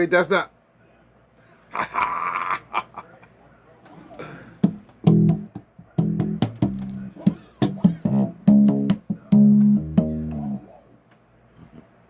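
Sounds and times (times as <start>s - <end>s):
bass guitar riff: 4.6s - 10.7s.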